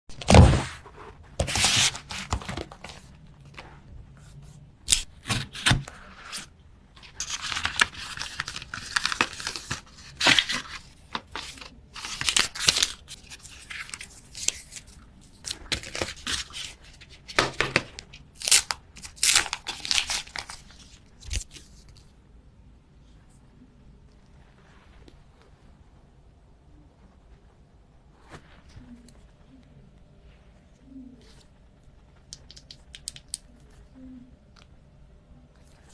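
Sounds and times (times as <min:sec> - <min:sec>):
plastic wrap tearing and crinkling: 0:01.4 - 0:03.1, 0:04.9 - 0:21.9.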